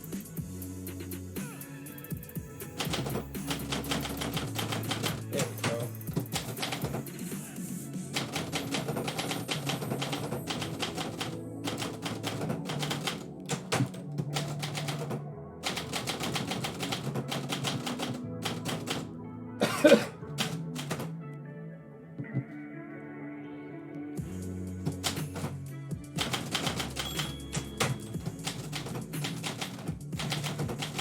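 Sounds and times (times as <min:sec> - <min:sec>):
background music: 0:00.0 - 0:31.0
typewriter keys striking: 0:02.8 - 0:07.1, 0:08.2 - 0:19.1, 0:20.4 - 0:21.1, 0:24.9 - 0:25.6, 0:26.2 - 0:31.0.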